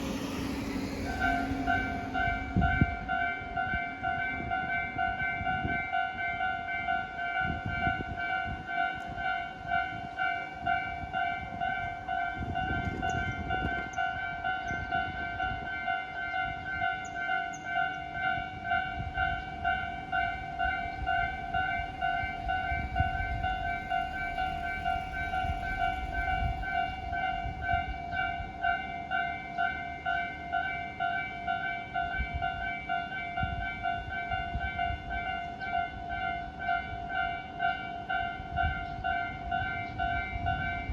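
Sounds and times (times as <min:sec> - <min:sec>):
low rumble: 0:00.0 - 0:04.1, 0:20.3 - 0:28.6
level crossing warning bell: 0:00.0 - 0:40.9.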